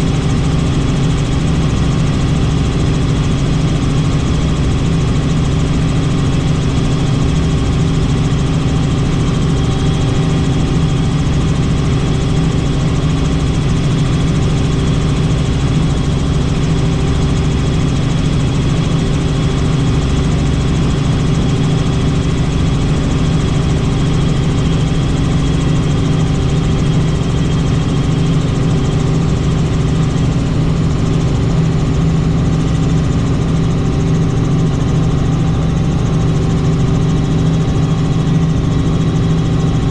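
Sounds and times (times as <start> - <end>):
helicopter rotor and engine drone: 0.0 - 39.9.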